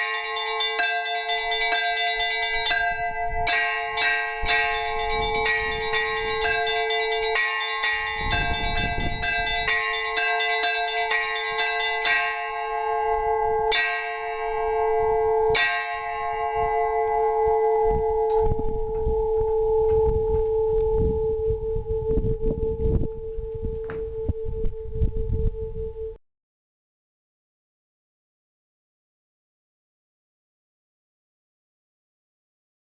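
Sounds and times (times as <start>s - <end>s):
small church bells striking: 0.0s - 21.7s
deep bell humming: 0.0s - 26.2s.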